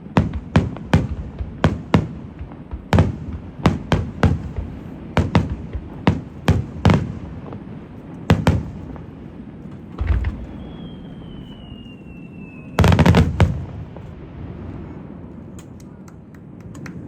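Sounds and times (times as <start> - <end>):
firework shells booming: 0.0 - 15.0
low rumbling: 8.6 - 15.4.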